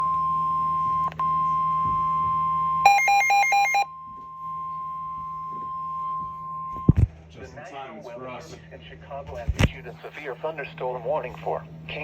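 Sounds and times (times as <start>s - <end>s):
rapid two-pitch beeping: 0.0s - 6.9s
steady high-pitched warning tone: 0.0s - 7.0s.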